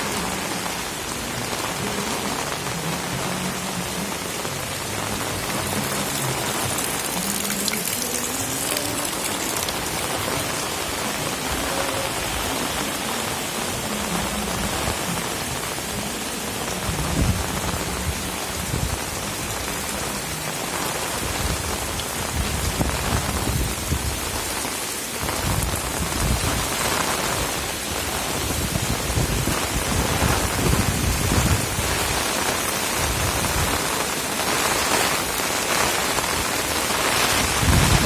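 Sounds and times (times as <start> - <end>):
heavy rain pouring: 0.0 - 38.0
strong wind gusting: 37.3 - 38.0.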